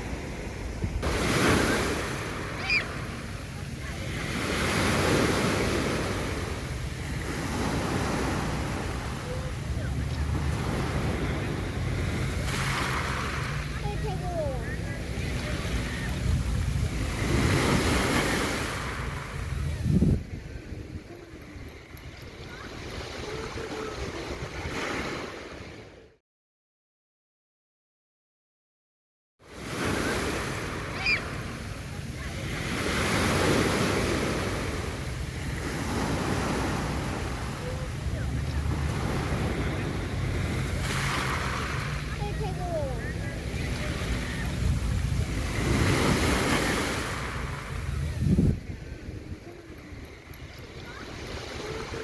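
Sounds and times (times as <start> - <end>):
wind rumbling on microphone: 0.0 - 3.9, 14.8 - 25.9, 33.4 - 52.0
sea waves breaking on beach: 0.0 - 26.1, 29.4 - 52.0.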